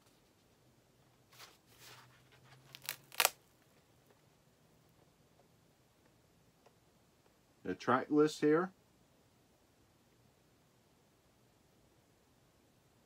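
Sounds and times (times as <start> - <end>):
cardboard rustling and scraping: 1.3 - 3.1.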